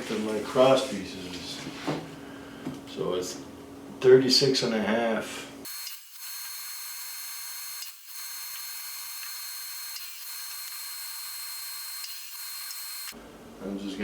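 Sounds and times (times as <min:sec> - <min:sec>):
power saw cutting wood: 0:05.6 - 0:13.2.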